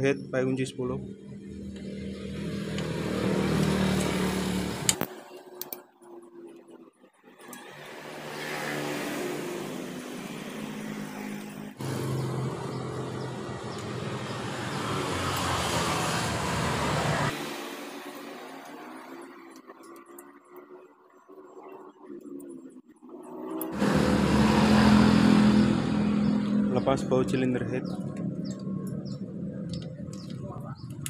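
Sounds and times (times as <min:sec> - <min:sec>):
motor running: 0:01.0 - 0:05.7, 0:07.3 - 0:19.6, 0:23.4 - 0:31.0.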